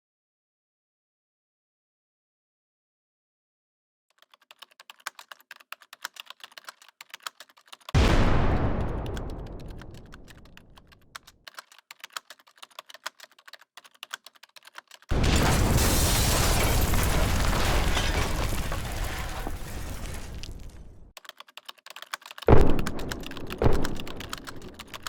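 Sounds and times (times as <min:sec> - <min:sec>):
irregular clicking: 0:04.1 - 0:15.1, 0:21.2 - 0:25.0.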